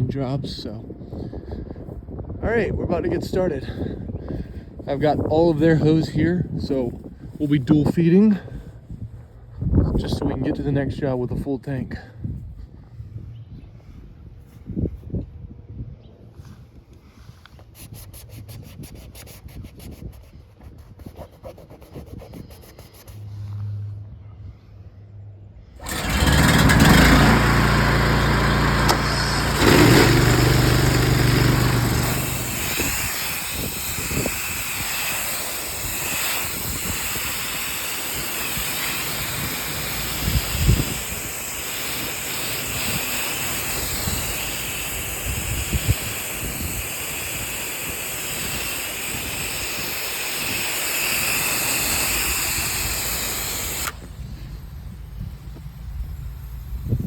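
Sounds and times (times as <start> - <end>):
engine hum: 25.2 - 57.0
water spray hissing: 25.8 - 55.8.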